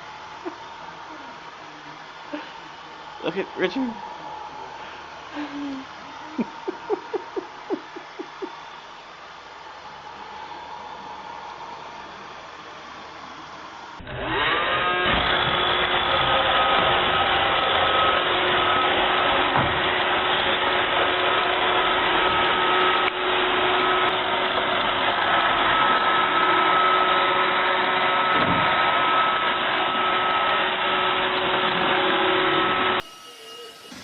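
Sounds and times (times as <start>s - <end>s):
robot vacuum motor whirring: 14.0s - 34.0s.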